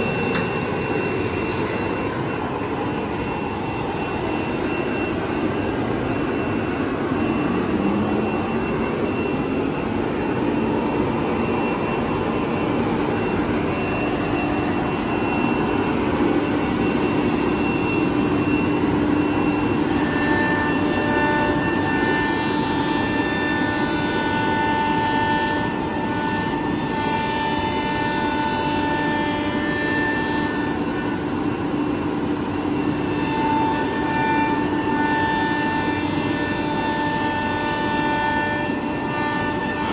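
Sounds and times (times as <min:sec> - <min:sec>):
cnc router running: 0:00.0 - 0:39.9
machine whining tones: 0:00.0 - 0:39.9.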